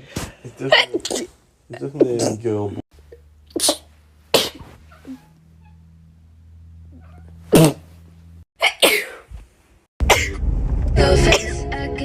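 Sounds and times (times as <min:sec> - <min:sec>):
sharp sneezes: 0:03.5 - 0:04.7, 0:07.5 - 0:07.9, 0:08.6 - 0:09.3.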